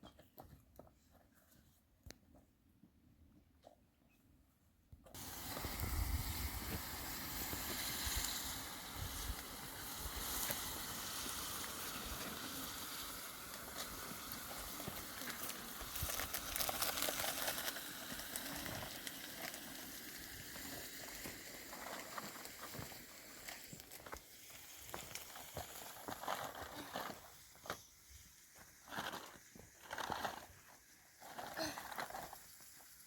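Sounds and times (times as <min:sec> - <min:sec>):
rustling crackling noise: 0:05.1 - 0:33.0
wind rumble on microphone: 0:05.6 - 0:08.3.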